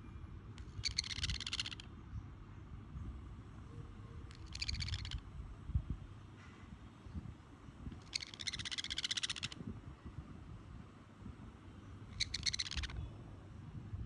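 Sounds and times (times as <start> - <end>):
parrot buzzy chattering call: 0.6 - 1.9, 4.3 - 5.2, 8.0 - 9.6, 12.1 - 13.0.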